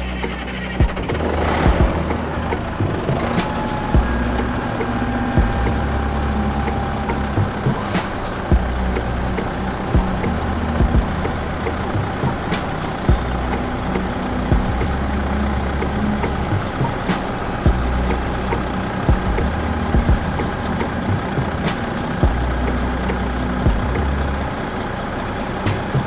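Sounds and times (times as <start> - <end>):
motor humming: 0.0 - 26.0
sharp clicks and knocks: 7.1 - 17.8.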